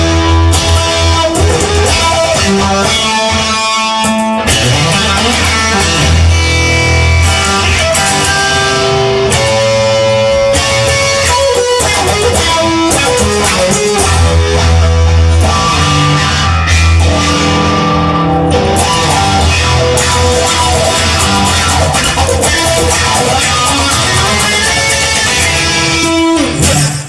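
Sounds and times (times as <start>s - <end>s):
electric guitar held notes: 0.0s - 27.0s
low bass: 4.5s - 11.2s, 12.4s - 27.0s.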